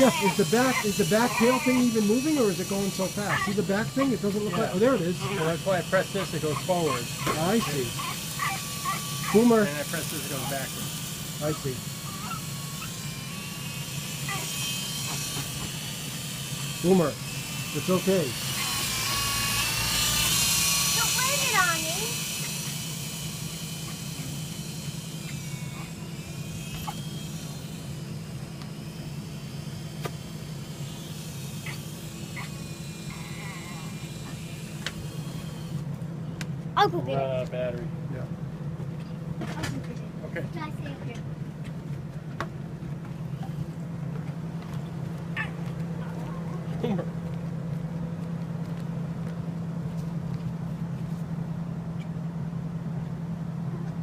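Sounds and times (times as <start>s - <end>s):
toy helicopter rotors buzzing: 0.0s - 36.0s
faint high whine: 7.2s - 38.3s.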